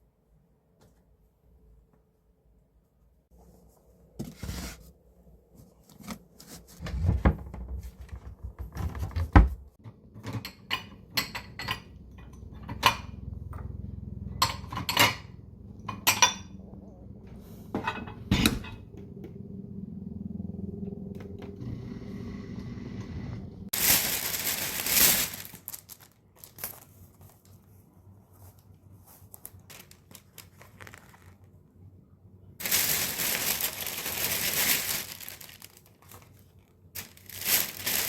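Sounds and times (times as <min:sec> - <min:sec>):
dishes and utensils clinking: 0:10.2 - 0:13.2, 0:14.4 - 0:16.6, 0:17.7 - 0:18.9.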